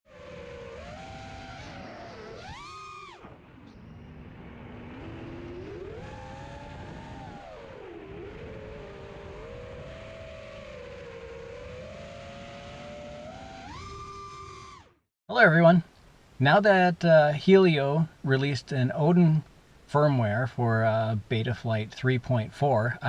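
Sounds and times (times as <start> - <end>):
quadcopter motors whining: 0.1 - 15.0.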